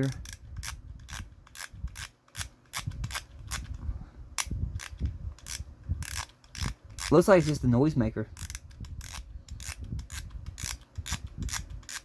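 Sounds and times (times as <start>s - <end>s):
plastic toy clicking and rasping: 0.0s - 3.8s, 4.4s - 7.6s, 8.4s - 12.0s.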